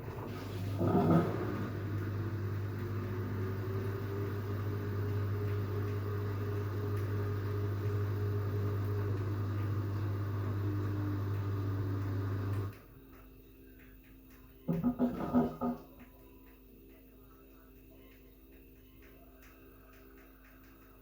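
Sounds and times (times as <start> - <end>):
washing machine spinning: 0.0 - 16.2.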